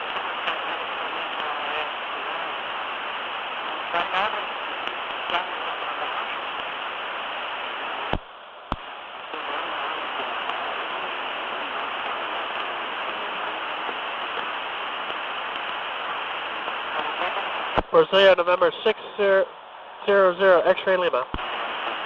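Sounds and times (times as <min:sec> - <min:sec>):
cockpit background hiss: 0:00.0 - 0:22.0.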